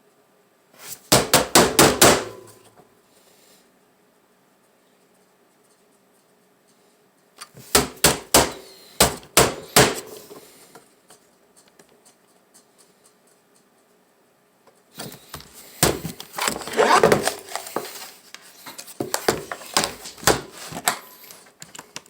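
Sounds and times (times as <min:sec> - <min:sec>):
hand smacking laptop case: 0:19.0 - 0:20.6.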